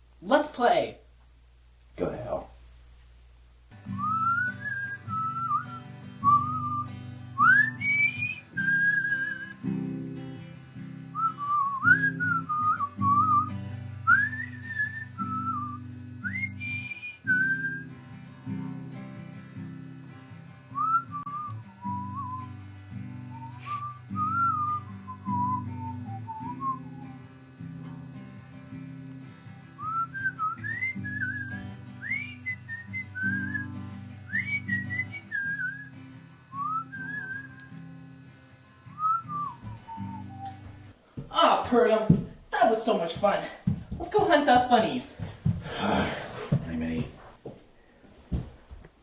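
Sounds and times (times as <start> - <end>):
strummed acoustic guitar: 3.7 - 41.0
whistled melody: 3.9 - 9.6, 11.2 - 17.9, 20.8 - 22.6, 23.3 - 27.3, 29.8 - 37.7, 39.0 - 40.7.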